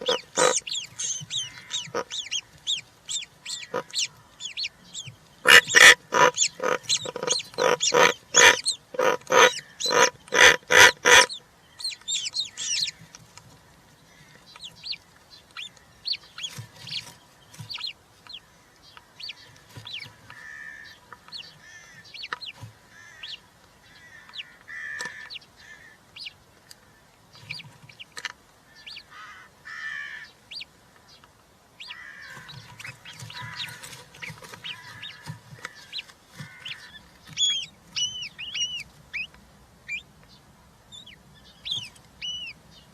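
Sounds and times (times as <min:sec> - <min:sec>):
harsh rasping bird calls: 0:00.0 - 0:31.2, 0:31.8 - 0:42.9
faint high bird chirps: 0:31.8 - 0:42.9.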